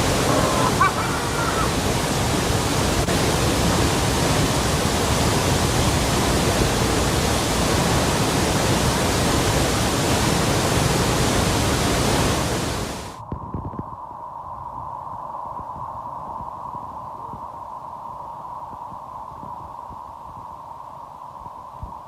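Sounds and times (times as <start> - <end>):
waterfall rushing: 0.0 - 13.2.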